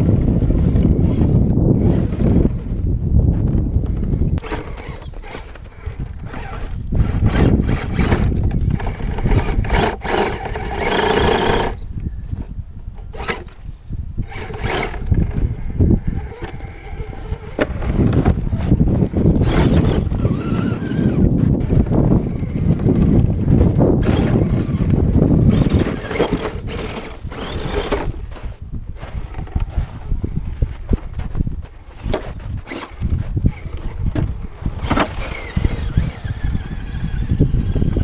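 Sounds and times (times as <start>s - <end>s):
wind rumble on microphone: 0.0s - 38.0s
toy truck electric motor whining: 4.4s - 21.8s, 24.0s - 30.9s, 34.7s - 38.0s.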